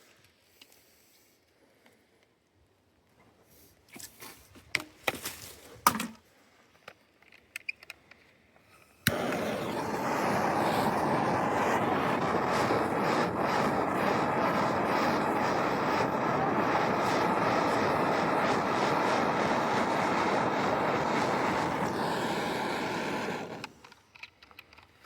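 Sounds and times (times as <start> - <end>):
heat tool rushing: 9.0 - 24.0.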